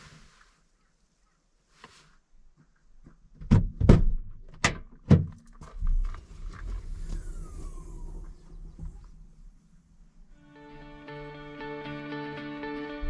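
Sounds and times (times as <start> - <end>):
low uneven rumble: 5.6 - 11.4.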